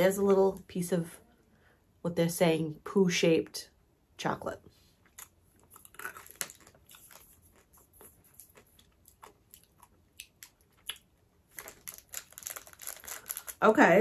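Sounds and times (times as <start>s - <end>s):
chewing crunchy candy: 5.0s - 13.6s.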